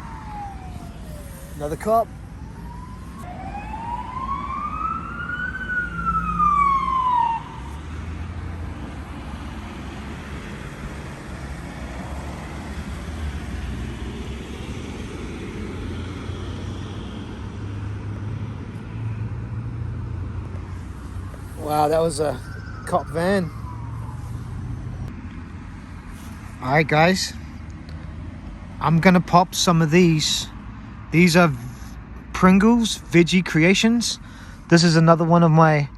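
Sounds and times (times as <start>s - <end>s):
siren wailing: 0.0s - 7.8s, 21.3s - 25.1s
road traffic rumble: 0.0s - 35.9s.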